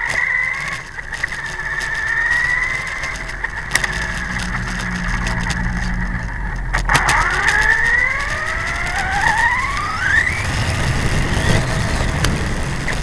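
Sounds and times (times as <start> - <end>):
clicks: 0.0 - 10.3
model motor whining: 0.0 - 13.0.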